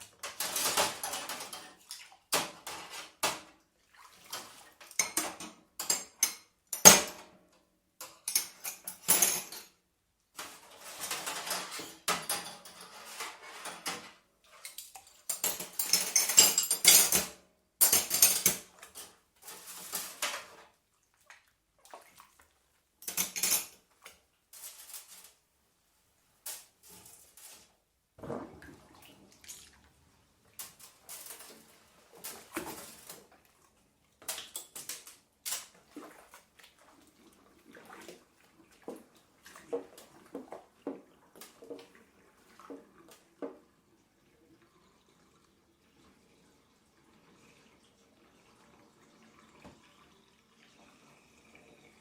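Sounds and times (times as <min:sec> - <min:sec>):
dishes and cutlery clattering: 0:00.0 - 0:03.5, 0:04.3 - 0:07.4, 0:08.0 - 0:09.8, 0:10.4 - 0:20.7, 0:23.0 - 0:25.4, 0:30.5 - 0:33.3, 0:34.2 - 0:35.8
water splashing in sink: 0:00.0 - 0:07.2, 0:18.4 - 0:22.8, 0:26.6 - 0:52.0.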